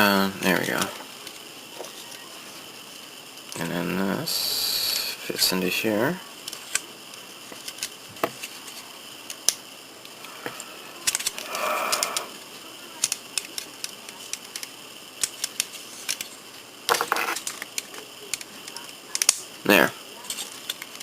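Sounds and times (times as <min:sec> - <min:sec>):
plastic parts clicking: 0:07.5 - 0:12.3, 0:13.0 - 0:16.3, 0:16.9 - 0:19.4, 0:20.3 - 0:21.0.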